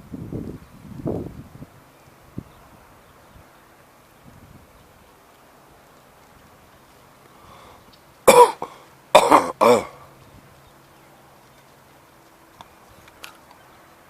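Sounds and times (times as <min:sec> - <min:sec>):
loud coughs: 0:08.3 - 0:10.0.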